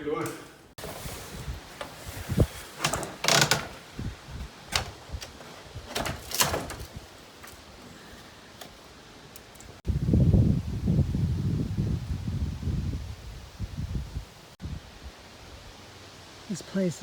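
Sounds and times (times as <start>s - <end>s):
wind rumbling on microphone: 0.8s - 7.2s, 9.8s - 15.8s.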